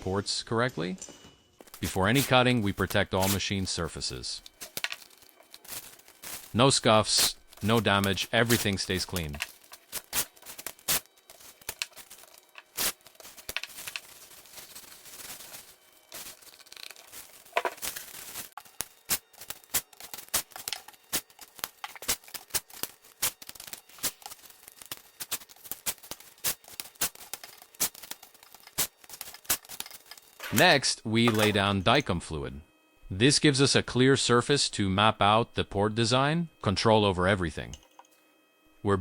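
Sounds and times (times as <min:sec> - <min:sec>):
tape crackling and ticking: 0:01.6 - 0:30.6.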